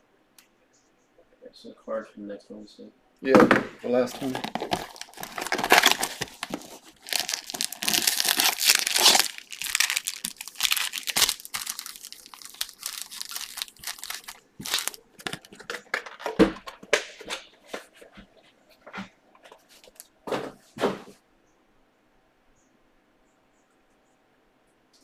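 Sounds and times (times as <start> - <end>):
foil wrappers tearing and crinkling: 4.0 - 15.6.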